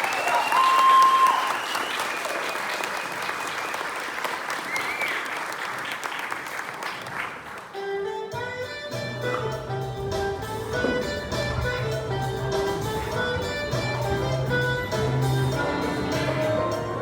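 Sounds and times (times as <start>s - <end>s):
audience cheering: 0.0s - 7.4s
audience applauding: 0.0s - 7.8s
music notes: 7.7s - 17.0s.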